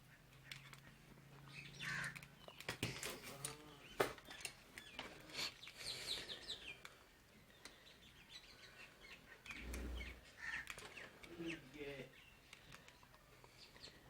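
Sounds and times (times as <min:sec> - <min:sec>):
small birds chirping faintly: 0:00.0 - 0:14.0.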